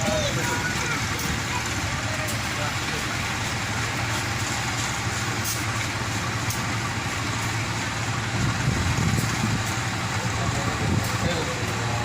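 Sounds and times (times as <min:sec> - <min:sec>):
large engine humming: 0:00.0 - 0:12.0
outdoor noise: 0:00.0 - 0:12.0.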